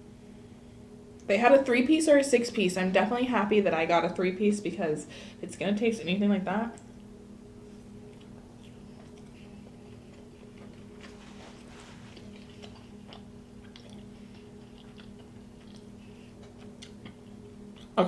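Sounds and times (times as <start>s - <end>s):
steady low hum: 0.0s - 18.0s
mouth clicks and smacks chewing: 8.1s - 11.2s, 12.0s - 18.0s.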